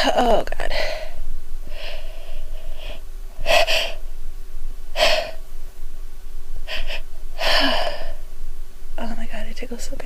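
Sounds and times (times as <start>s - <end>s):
woman breathing heavily and gasping: 0.7s - 4.1s, 4.9s - 5.4s, 6.6s - 8.3s.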